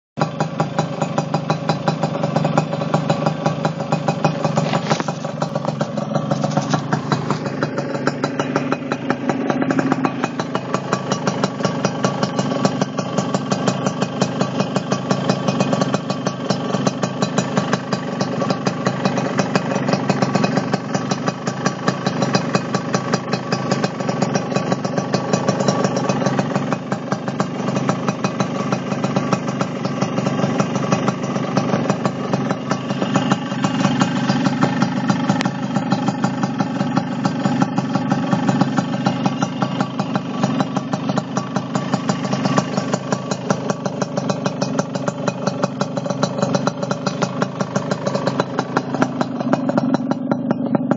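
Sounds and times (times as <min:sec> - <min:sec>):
motorcycle engine idling: 0:00.2 - 0:50.9.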